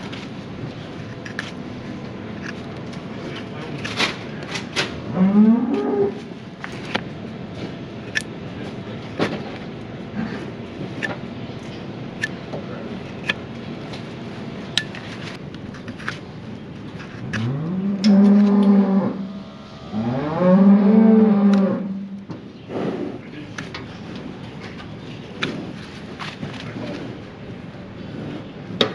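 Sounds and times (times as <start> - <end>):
cow mooing: 5.0 - 6.3, 17.4 - 22.2.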